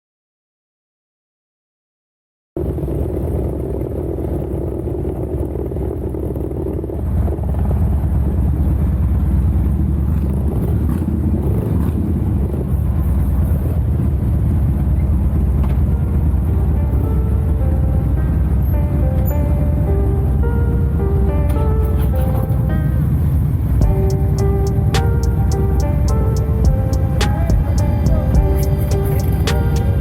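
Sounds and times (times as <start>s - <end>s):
motorcycle engine rumbling: 23.5s - 30.0s.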